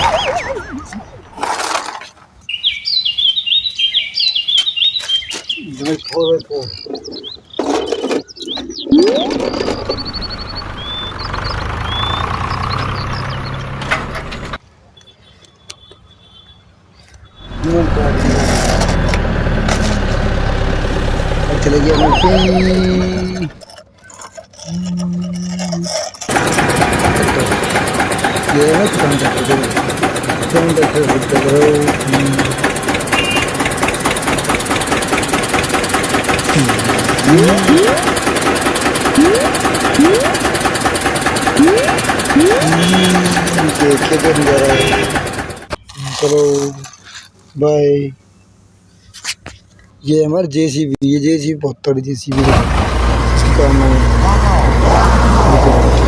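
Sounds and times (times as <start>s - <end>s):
birds chirping: 0.0s - 1.5s, 2.4s - 18.2s, 21.0s - 25.7s, 28.1s - 34.0s, 36.4s - 38.4s, 39.0s - 40.9s, 41.5s - 46.8s
voice-like sound: 8.9s - 9.7s, 21.4s - 23.6s, 36.5s - 38.2s, 39.1s - 40.4s, 41.6s - 44.8s, 53.4s - 56.0s
small engine running with ticking: 9.4s - 14.6s, 17.5s - 46.6s
motor droning: 36.3s - 45.7s.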